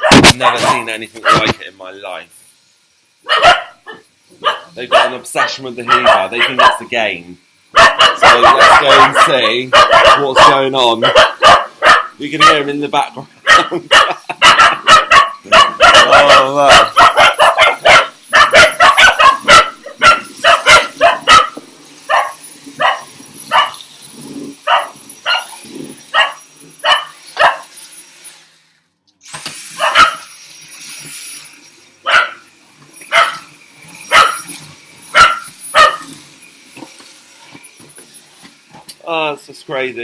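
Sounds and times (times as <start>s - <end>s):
dogs barking: 0.0s - 1.6s, 3.2s - 7.0s, 7.7s - 12.7s, 13.4s - 23.9s, 24.5s - 27.7s, 29.8s - 30.3s, 32.0s - 36.2s.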